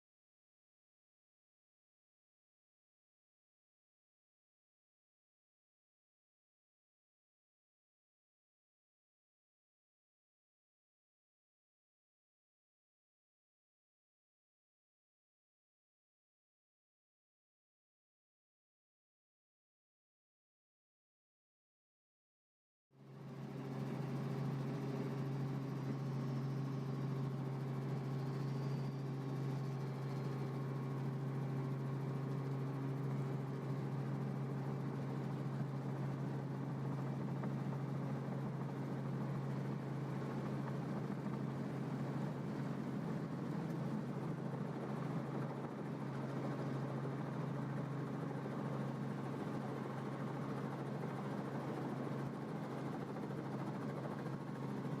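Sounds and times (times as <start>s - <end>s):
helicopter rotor drone: 23.0s - 55.0s.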